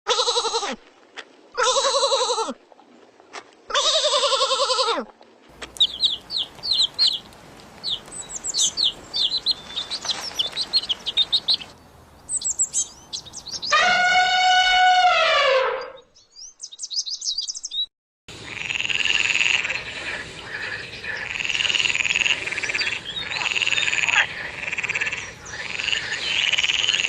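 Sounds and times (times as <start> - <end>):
wavering bleats: 1.6 - 2.6
small birds chirping: 5.6 - 13.8, 16.0 - 17.9, 19.6 - 27.0.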